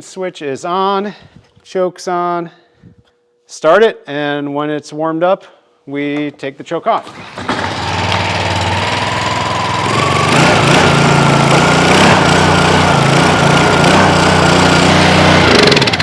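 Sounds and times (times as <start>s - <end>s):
small engine running: 7.0s - 16.0s.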